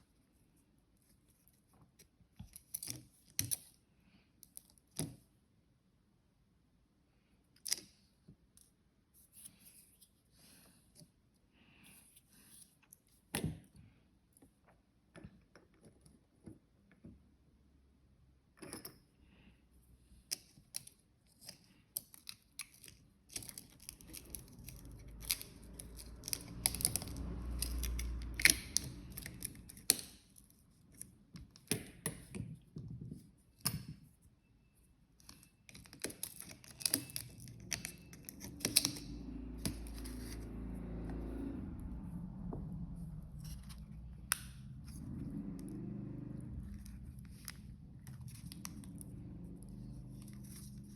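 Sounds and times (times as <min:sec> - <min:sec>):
low rumble: 0:40.0 - 0:50.9.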